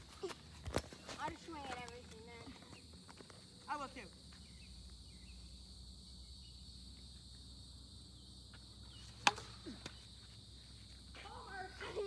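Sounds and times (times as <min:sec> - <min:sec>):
plastic bat hitting ball: 0:09.2 - 0:10.0.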